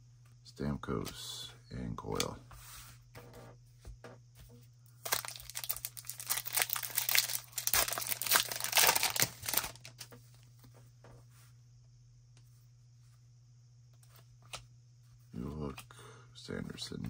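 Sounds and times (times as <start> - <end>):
plastic wrapper tearing and crinkling: 5.0 - 10.0.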